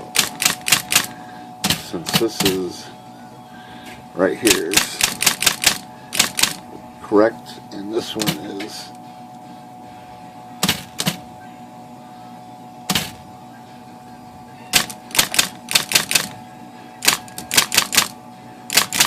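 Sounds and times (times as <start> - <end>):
typewriter motor hum: 0.0 - 2.6, 4.4 - 6.6, 10.6 - 11.2, 14.7 - 16.4, 17.0 - 19.0
typewriter key strikes: 0.1 - 1.1, 4.7 - 6.6, 14.8 - 16.3, 17.0 - 18.1, 18.7 - 19.0.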